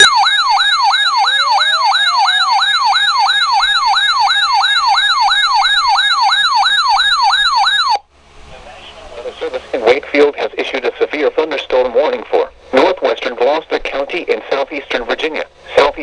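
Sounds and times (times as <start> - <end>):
electronic siren alert tone: 0.0 - 8.0.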